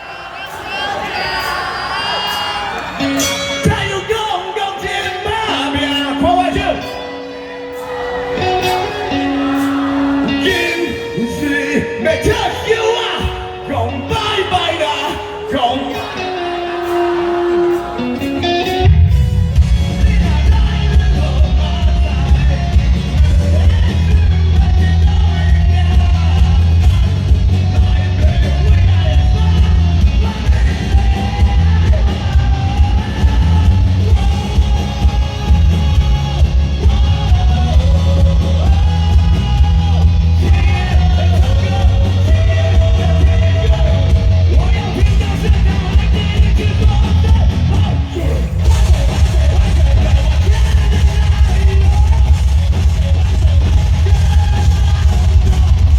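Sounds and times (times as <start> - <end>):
live band music with singing: 0.0 - 55.9
heavy bass and drum beat: 17.0 - 55.9.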